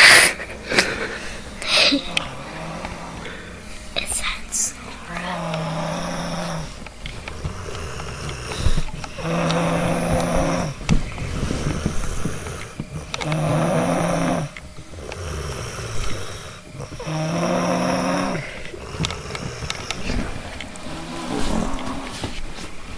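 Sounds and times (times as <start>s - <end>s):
person snoring: 0.0s - 4.3s, 5.3s - 22.1s
breathing: 3.2s - 4.0s, 18.4s - 20.2s.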